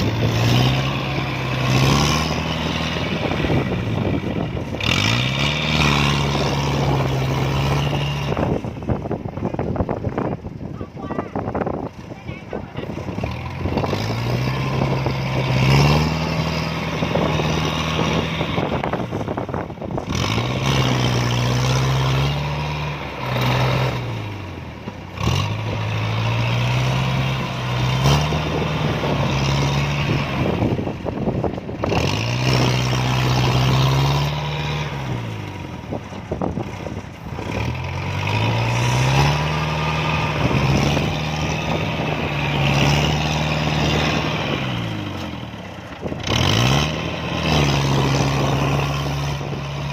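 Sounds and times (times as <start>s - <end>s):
diesel engine revving: 0.0s - 49.9s.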